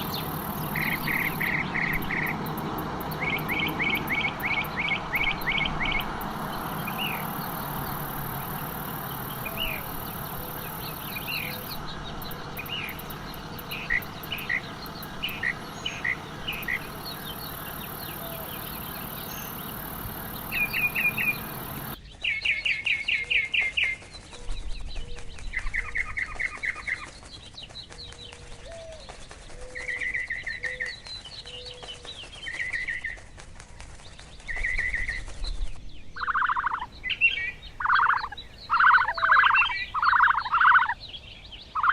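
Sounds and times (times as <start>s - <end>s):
high insect buzz: 0.0s - 22.0s
rapid trilled chirps: 0.0s - 22.0s, 36.2s - 41.0s
birds chirping and calling: 0.0s - 33.2s, 34.2s - 41.9s.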